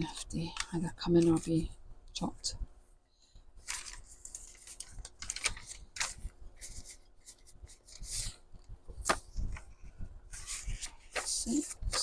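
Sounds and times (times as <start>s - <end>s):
paper pages rustling: 3.6s - 12.0s.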